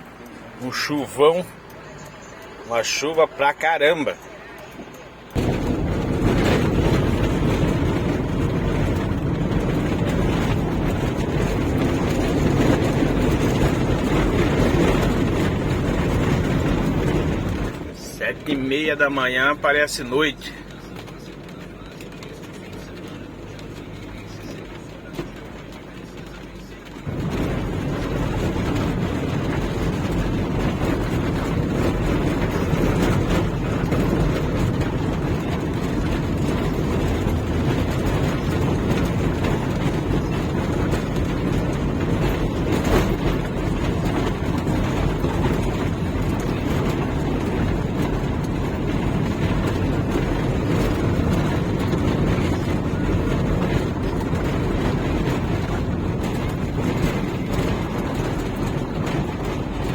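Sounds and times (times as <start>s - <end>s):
heavy rain on car: 0.0s - 59.9s
tyre and road noise: 0.0s - 59.9s.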